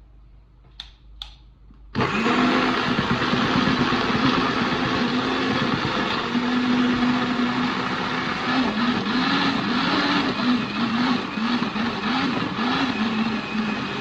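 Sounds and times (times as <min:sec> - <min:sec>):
blender motor running: 0:02.0 - 0:14.0.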